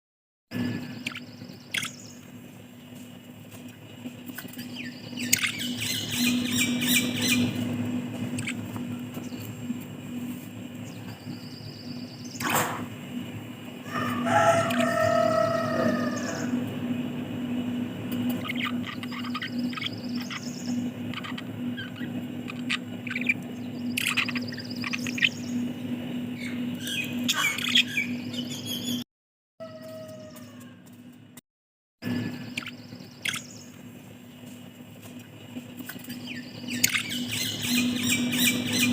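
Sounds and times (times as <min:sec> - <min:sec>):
steady low hum: 0:00.5 - 0:29.0, 0:32.0 - 0:38.9
budgerigars chirping: 0:00.9 - 0:02.2, 0:04.4 - 0:07.6, 0:08.2 - 0:09.5, 0:18.3 - 0:25.6, 0:26.4 - 0:29.0, 0:32.4 - 0:33.8, 0:35.9 - 0:38.9.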